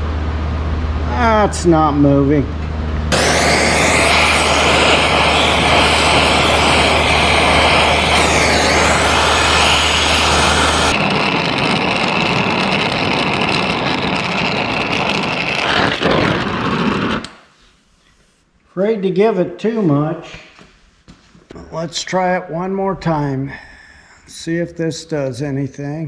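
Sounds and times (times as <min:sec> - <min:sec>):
low hum: 0:02.4 - 0:17.2
gas torch hissing: 0:03.1 - 0:17.5.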